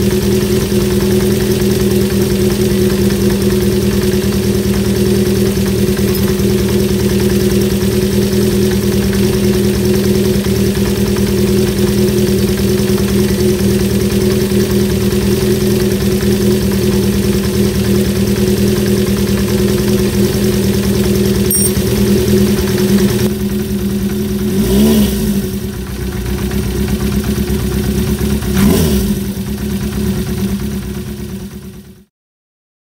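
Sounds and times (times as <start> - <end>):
motorcycle engine idling: 0.0 - 32.1
throttle blips: 21.5 - 22.1.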